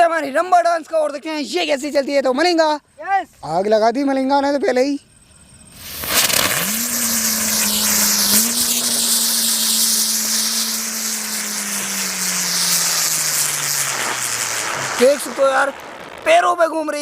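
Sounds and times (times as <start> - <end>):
low whirring hum: 5.0 - 15.3
spinning firework hissing: 5.2 - 17.0.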